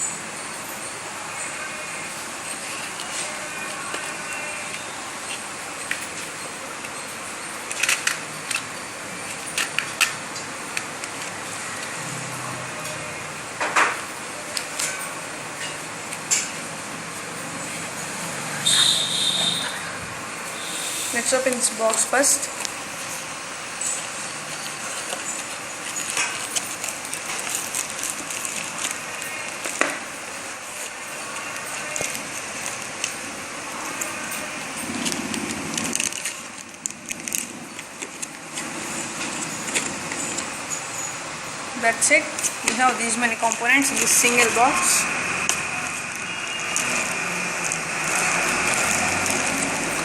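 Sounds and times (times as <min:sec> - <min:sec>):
clicks and crackles of handling packaging: 0:02.1 - 0:12.1, 0:13.6 - 0:18.1, 0:21.2 - 0:41.2, 0:41.8 - 0:50.0.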